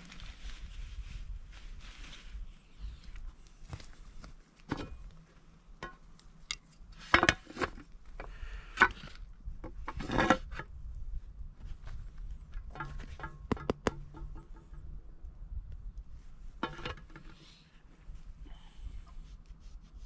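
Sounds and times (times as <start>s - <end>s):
camp cookware knocking and clinking: 4.7s - 5.0s, 5.8s - 7.8s, 12.6s - 14.9s, 16.6s - 17.4s.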